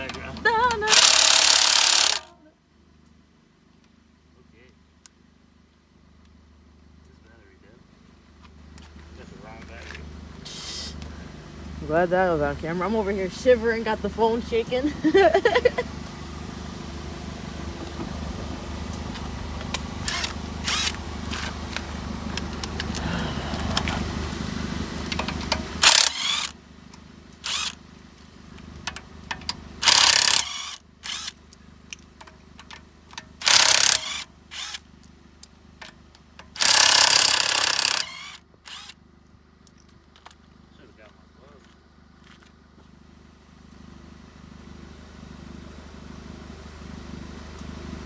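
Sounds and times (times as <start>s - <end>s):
impact wrench bursts: 0.8s - 2.3s, 20.0s - 21.6s, 25.2s - 26.6s, 27.4s - 27.8s, 29.8s - 31.4s, 33.3s - 34.9s, 36.5s - 39.0s.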